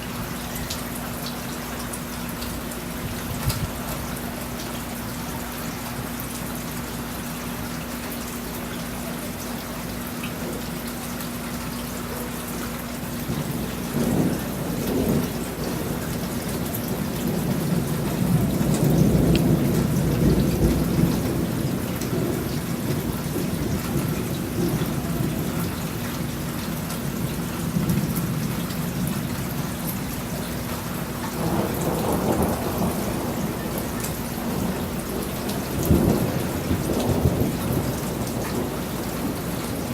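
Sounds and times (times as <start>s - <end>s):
steady rain: 0.0s - 39.9s
thunder rumbling: 13.0s - 39.9s.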